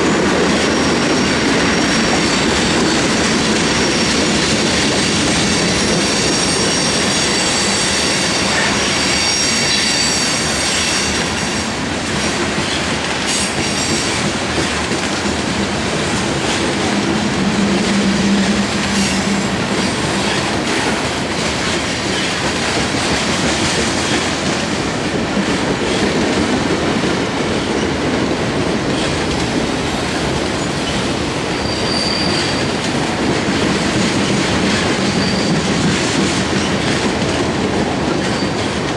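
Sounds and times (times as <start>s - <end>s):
train wheels on rails: 0.0s - 38.9s
wheel squeal: 0.5s - 12.7s, 16.0s - 22.3s, 30.6s - 33.0s, 34.0s - 36.0s.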